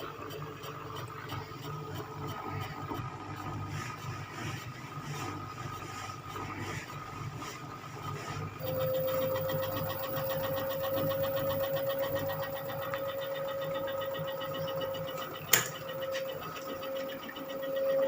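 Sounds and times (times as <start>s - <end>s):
washing machine motor whine: 0.0s - 18.0s
low hum: 8.6s - 18.0s.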